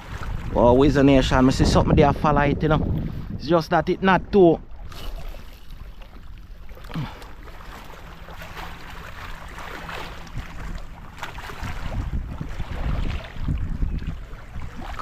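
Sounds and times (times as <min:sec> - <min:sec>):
wind buffeting microphone: 0:00.0 - 0:06.4, 0:09.4 - 0:15.0
sea waves washing: 0:02.8 - 0:15.0.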